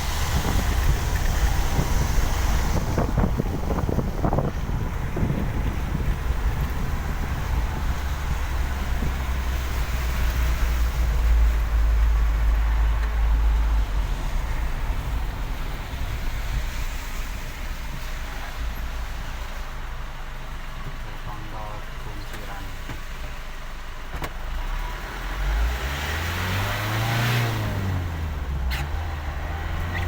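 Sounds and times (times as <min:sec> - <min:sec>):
wind buffeting microphone: 0:00.0 - 0:20.1
vehicle road rumble: 0:00.0 - 0:30.0.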